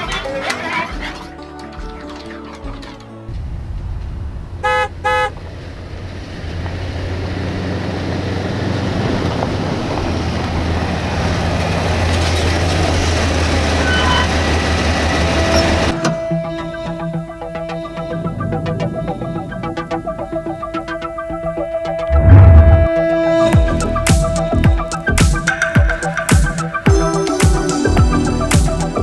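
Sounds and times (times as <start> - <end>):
vehicle engine rumbling: 2.1 - 16.0, 22.0 - 25.1
road noise: 2.1 - 16.6, 17.2 - 26.8
vehicle horn tooting: 4.6 - 5.4.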